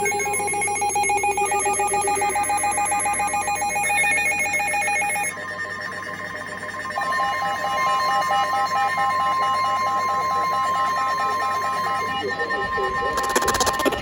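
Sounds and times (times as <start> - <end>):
electronic alert tones beeping: 0.0 - 5.3.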